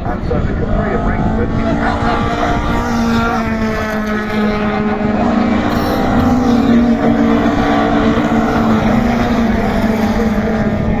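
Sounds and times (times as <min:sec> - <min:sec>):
racing car engines at high revs: 0:00.0 - 0:11.0.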